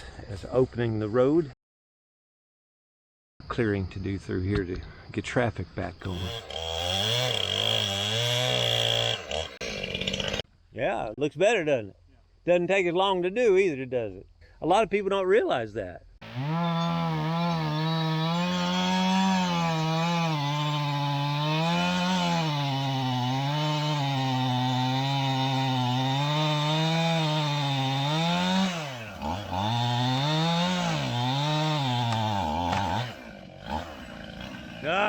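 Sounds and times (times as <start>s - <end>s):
chainsaw cutting log: 6.1s - 10.4s, 16.2s - 35.0s.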